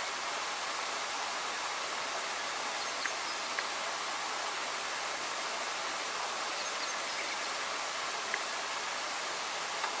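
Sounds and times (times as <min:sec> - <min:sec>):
steady outdoor hiss: 0:00.0 - 0:10.0.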